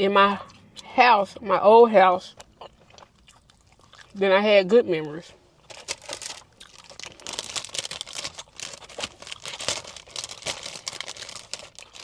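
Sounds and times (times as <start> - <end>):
food packaging crinkling: 5.6 - 12.0.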